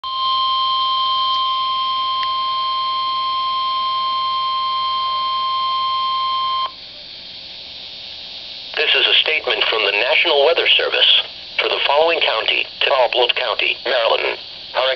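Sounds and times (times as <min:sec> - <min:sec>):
steady high alarm tone: 0:00.0 - 0:06.8
faint radio hiss: 0:06.7 - 0:14.9.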